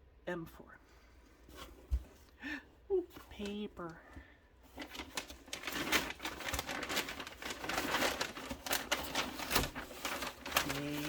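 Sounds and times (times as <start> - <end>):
packing paper crumpling: 4.6 - 11.0.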